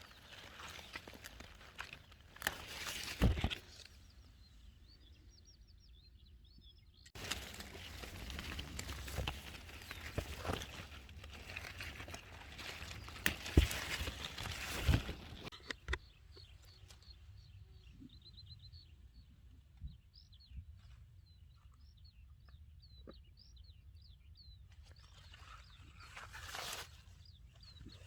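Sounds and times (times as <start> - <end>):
rustling: 0.0 - 4.0, 7.2 - 16.0
songbird chirping: 0.0 - 28.0.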